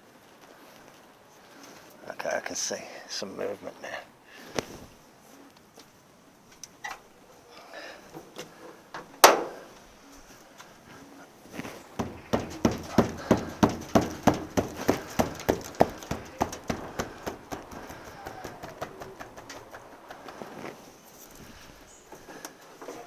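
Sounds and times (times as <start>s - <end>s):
rapid knocks on metal fittings: 11.6s - 20.6s.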